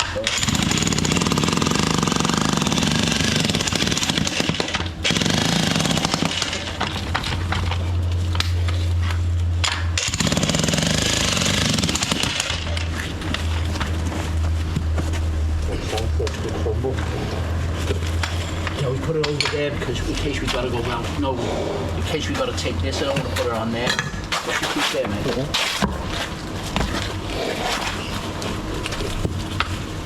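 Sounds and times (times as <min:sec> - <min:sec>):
jackhammer hammering: 0:00.0 - 0:07.8, 0:09.6 - 0:13.7.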